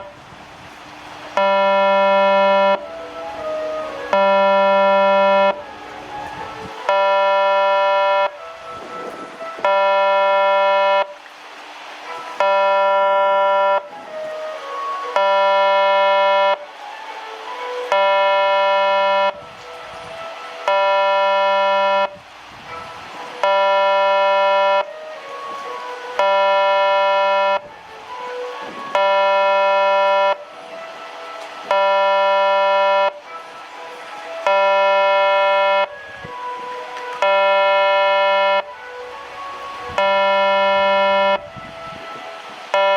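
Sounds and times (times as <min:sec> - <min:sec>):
train warning buzzer blasts: 0:01.4 - 0:02.9, 0:04.1 - 0:05.6, 0:06.9 - 0:11.2, 0:12.1 - 0:13.9, 0:15.1 - 0:16.6, 0:17.9 - 0:19.4, 0:20.5 - 0:24.9, 0:26.2 - 0:27.7, 0:28.9 - 0:30.4, 0:31.6 - 0:33.2, 0:34.4 - 0:35.9, 0:37.2 - 0:38.7, 0:39.9 - 0:41.5, 0:42.2 - 0:42.9.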